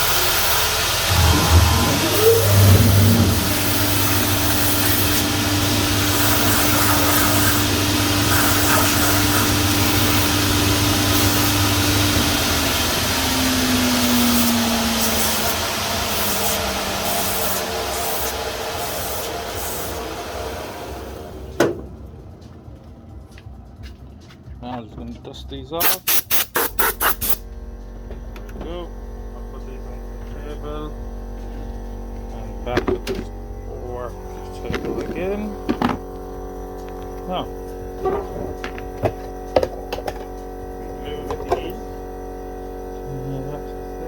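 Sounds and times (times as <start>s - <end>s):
machine winding down: 0.0s - 22.4s
grinding machine whirring: 0.0s - 23.8s.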